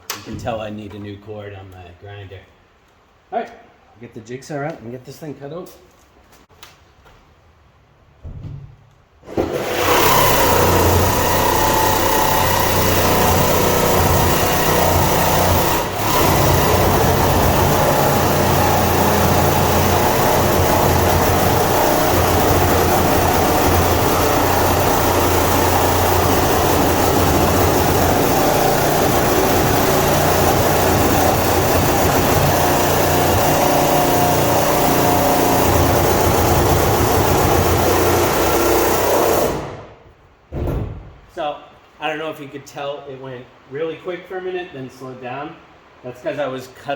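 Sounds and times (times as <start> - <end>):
jigsaw cutting sheet steel: 9.3 - 40.0.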